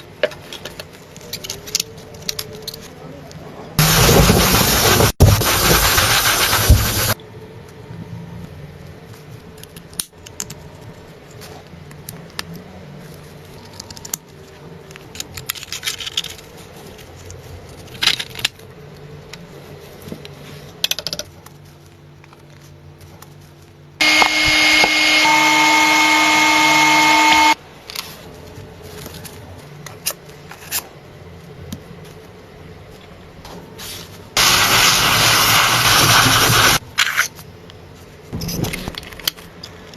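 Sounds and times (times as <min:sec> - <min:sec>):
loud power tool running: 0:24.0 - 0:27.6, 0:34.4 - 0:36.8.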